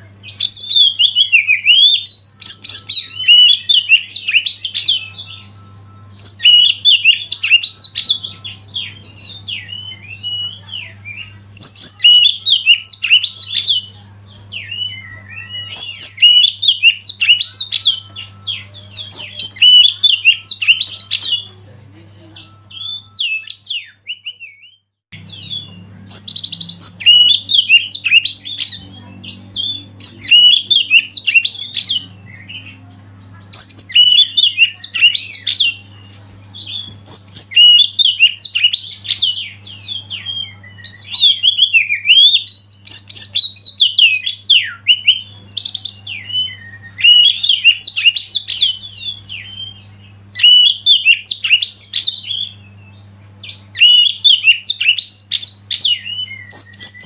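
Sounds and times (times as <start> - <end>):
bird singing warbling whistles: 0.4 - 10.6, 22.6 - 28.8, 29.5 - 32.0, 33.6 - 35.8, 37.1 - 52.6, 53.4 - 57.0
steady low hum: 25.1 - 57.0.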